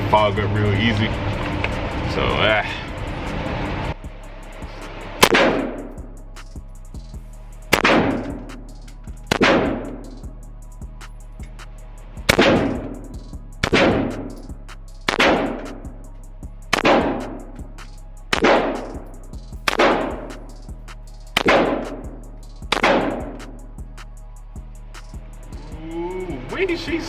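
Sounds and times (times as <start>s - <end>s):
gunshots echoing indoors: 5.2s - 5.8s, 12.3s - 12.9s, 22.7s - 23.4s.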